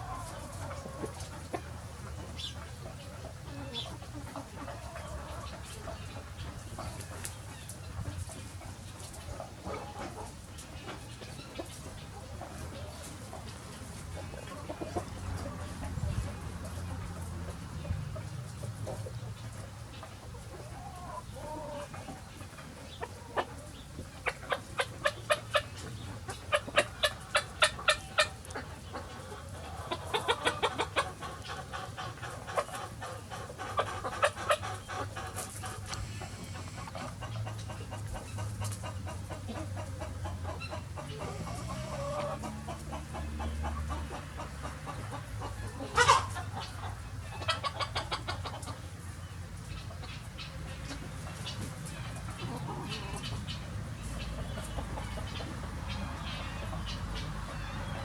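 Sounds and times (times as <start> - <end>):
chickens clucking: 0.0 - 58.0.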